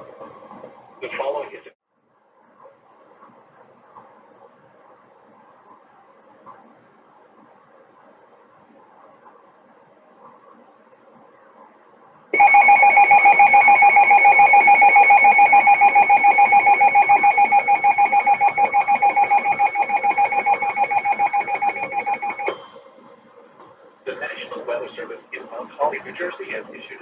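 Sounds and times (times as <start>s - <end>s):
pulsing electronic alert tone: 12.4s - 22.6s.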